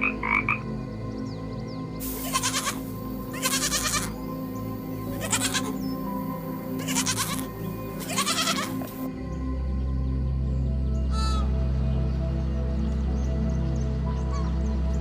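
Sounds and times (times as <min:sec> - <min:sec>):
background music: 0:00.0 - 0:15.0
farm animal bleating: 0:02.2 - 0:04.1, 0:05.2 - 0:05.7, 0:06.8 - 0:08.9.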